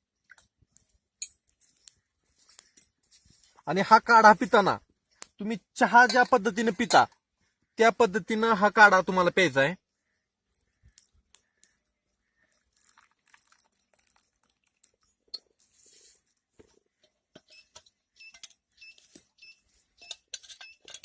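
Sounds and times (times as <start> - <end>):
kitchen utensils clinking: 20.0 - 21.0.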